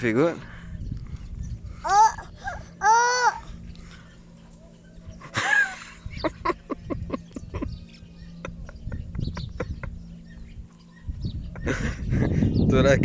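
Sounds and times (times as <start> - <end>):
child imitating hen clucks: 1.8 - 3.5
child squealing: 1.8 - 3.5.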